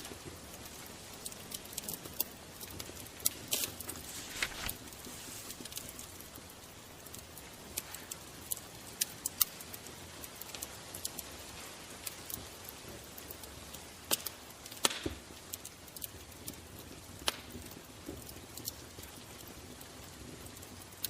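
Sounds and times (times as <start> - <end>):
fire hissing: 0.0 - 15.7
fire crackling and popping: 0.0 - 21.0.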